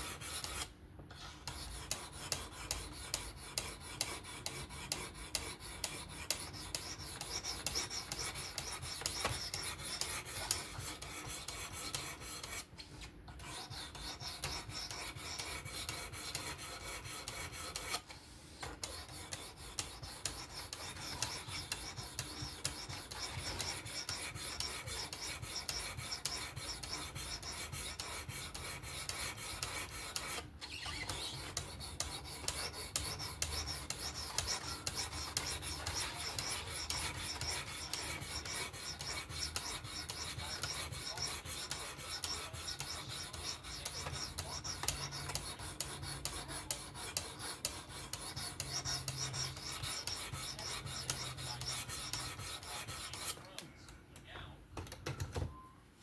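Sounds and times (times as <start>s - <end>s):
knife scraping on sharpening plate: 18.7s - 53.4s.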